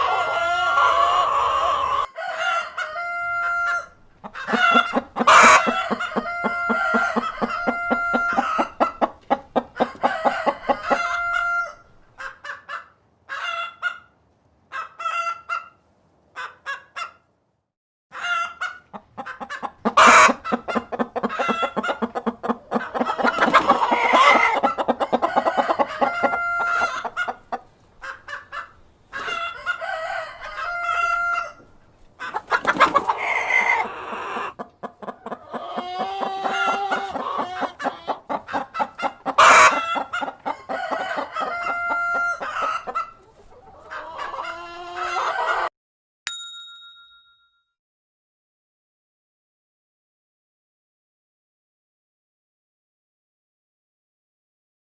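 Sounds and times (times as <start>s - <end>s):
rooster crowing: 0.0s - 8.8s, 9.8s - 11.8s, 25.2s - 27.1s, 29.6s - 31.6s, 40.7s - 42.7s
hens clucking: 0.0s - 15.8s, 16.4s - 17.3s, 18.1s - 45.7s.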